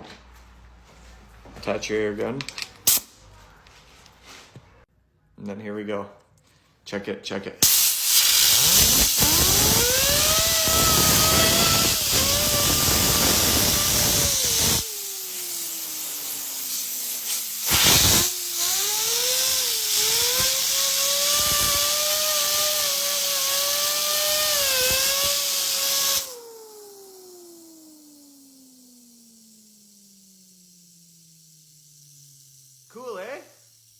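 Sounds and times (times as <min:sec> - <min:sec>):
compressed air hiss: 0:02.9 - 0:03.2, 0:07.6 - 0:33.9
fidget spinner whine: 0:07.9 - 0:33.9.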